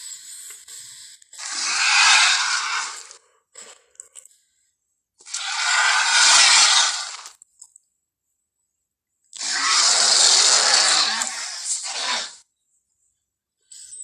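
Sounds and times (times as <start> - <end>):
raspy dinosaur roars: 1.4 - 3.1, 5.3 - 7.3, 9.4 - 12.4.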